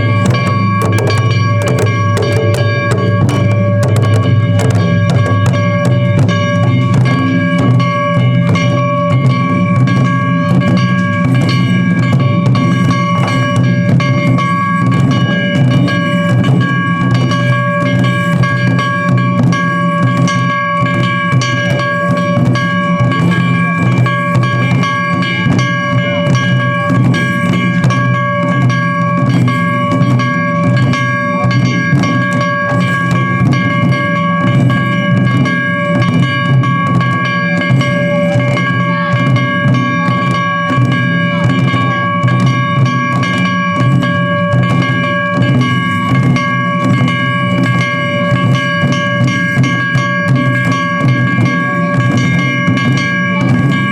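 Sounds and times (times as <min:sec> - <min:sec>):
steady high tones: 0:00.0 - 0:15.0
taiko drumming: 0:00.0 - 0:53.9.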